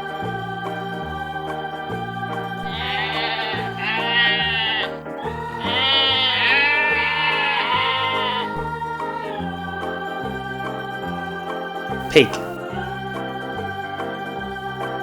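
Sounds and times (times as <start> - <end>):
background music: 0.0 - 15.0
sheep bleating: 2.6 - 9.3.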